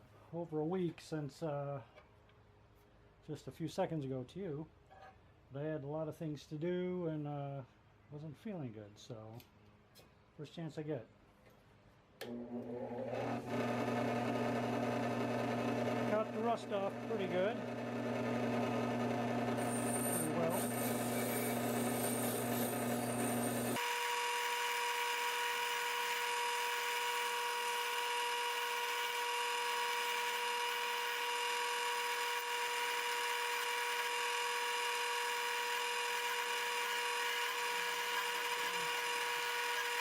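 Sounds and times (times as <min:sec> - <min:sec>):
power tool motor whine: 0:12.3 - 0:40.0.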